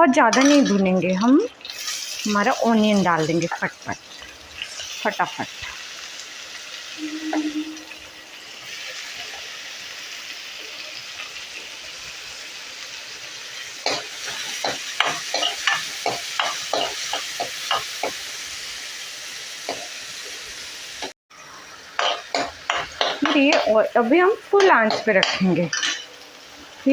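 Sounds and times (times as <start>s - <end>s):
onion sizzling in hot oil: 0.0s - 26.9s.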